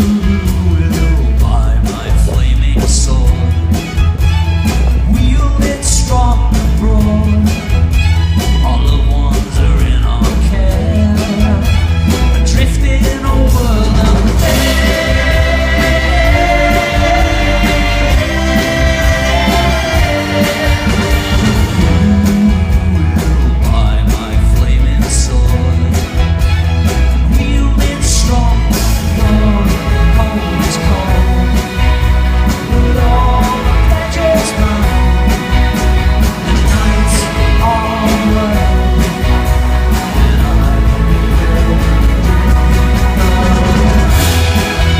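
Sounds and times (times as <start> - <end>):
rock band with orchestra: 0.0 - 44.9
person singing: 12.5 - 26.0, 27.2 - 39.5.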